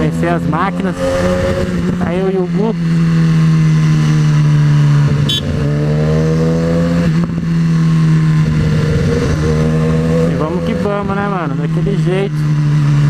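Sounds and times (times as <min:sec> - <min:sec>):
motorcycle engine accelerating: 0:00.0 - 0:13.0.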